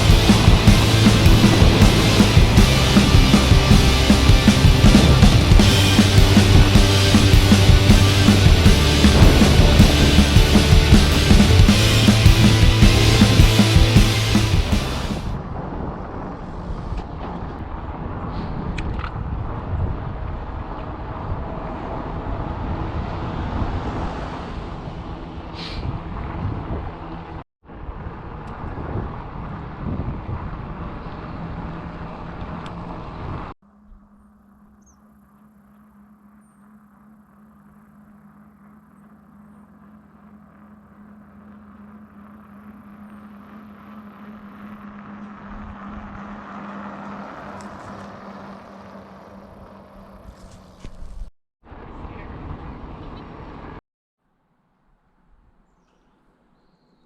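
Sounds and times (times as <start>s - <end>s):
tyres rushing on road: 0.0s - 15.4s, 41.3s - 50.8s
wind buffeting microphone: 0.0s - 33.5s
road rumble: 0.0s - 53.8s
vehicle engine hum: 0.0s - 53.8s.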